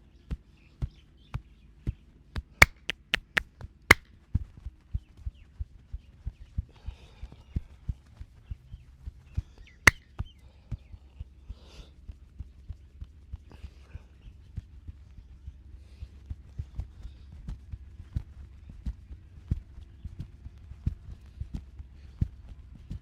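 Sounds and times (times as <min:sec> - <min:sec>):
hands patting on body: 0:02.6 - 0:03.4
sharp crack: 0:02.6 - 0:03.4.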